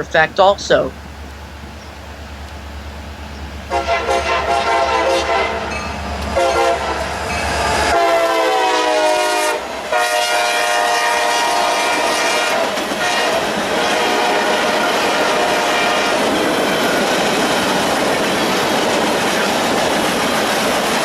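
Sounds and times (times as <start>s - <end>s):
low engine rumble: 0.0s - 7.4s
locomotive air horn blasts: 3.7s - 16.4s.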